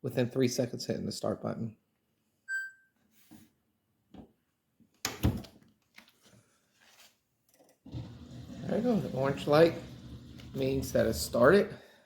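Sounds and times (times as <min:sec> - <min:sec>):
dishwasher electronic beep: 0:02.5 - 0:02.9.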